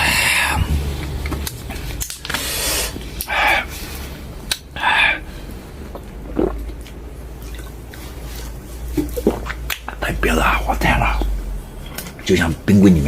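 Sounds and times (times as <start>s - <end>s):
person slurping water: 5.9s - 9.6s.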